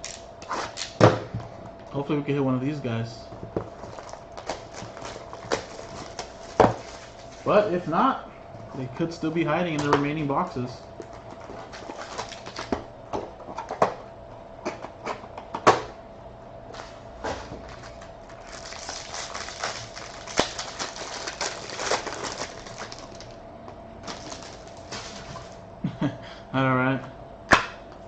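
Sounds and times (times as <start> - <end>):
wrapper crinkling and tearing: 3.8 - 7.5, 11.7 - 12.7, 17.6 - 23.4, 24.0 - 25.6.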